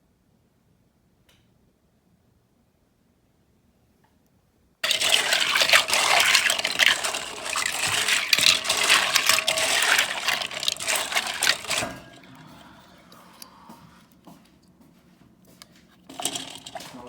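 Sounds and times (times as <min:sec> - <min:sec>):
plastic keycaps clattering in water: 0:04.8 - 0:12.9, 0:15.6 - 0:17.0.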